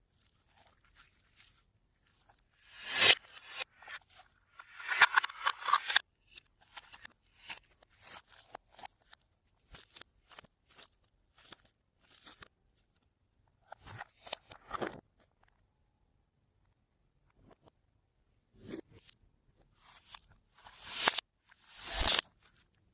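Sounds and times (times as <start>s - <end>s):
slime squishing: 0.0s - 2.5s, 7.3s - 12.4s.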